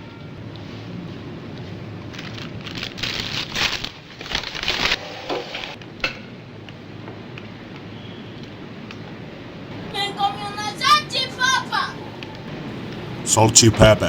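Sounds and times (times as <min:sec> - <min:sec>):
food wrapper crinkling: 0:02.0 - 0:05.0.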